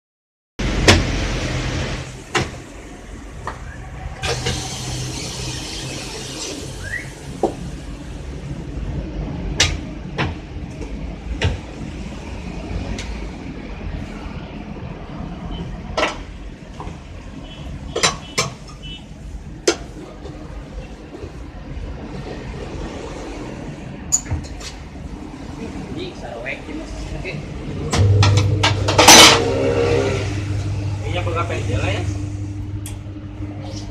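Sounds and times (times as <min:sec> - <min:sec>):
tyre-changing machine humming: 0:27.8 - 0:33.9.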